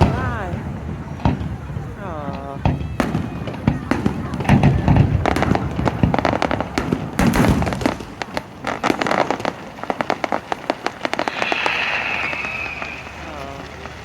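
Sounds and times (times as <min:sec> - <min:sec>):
fireworks bang: 0:00.0 - 0:14.0
fireworks crackling pops: 0:00.0 - 0:14.0
steady hiss: 0:10.2 - 0:14.0.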